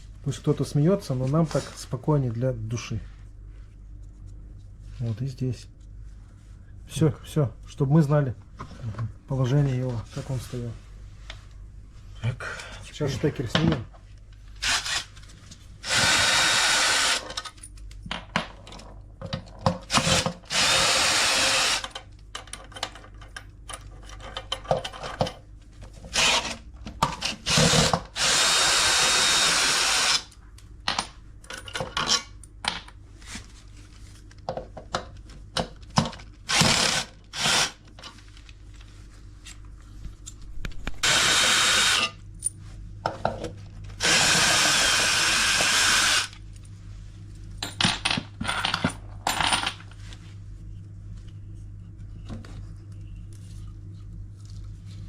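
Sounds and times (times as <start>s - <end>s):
cordless drill running: 14.6s - 15.1s, 15.8s - 17.3s, 19.9s - 21.9s, 26.2s - 26.5s, 27.4s - 30.3s, 36.5s - 37.8s, 41.0s - 42.1s, 44.0s - 46.4s
clicks and knocks of tools: 21.8s - 26.1s.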